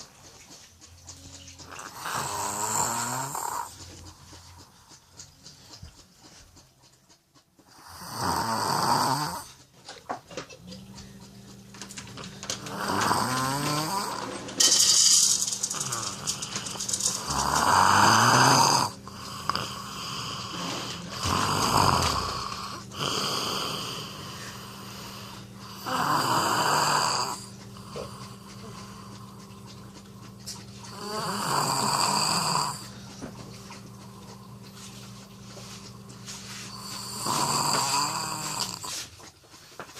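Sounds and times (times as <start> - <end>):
person snoring: 1.7 - 3.8, 7.7 - 9.6, 12.4 - 29.2, 30.8 - 33.0, 36.0 - 39.0.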